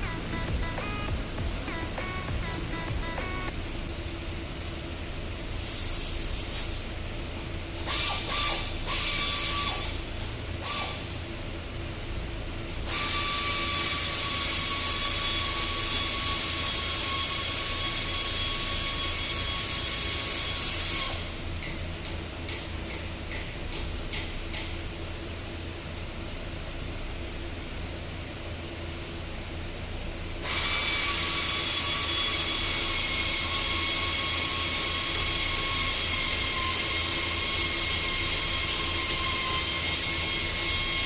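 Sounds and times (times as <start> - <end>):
hiss of air: 5.6 - 7.0
pneumatic air tool whining: 7.8 - 10.0, 10.6 - 11.1, 12.9 - 21.4, 30.4 - 41.0.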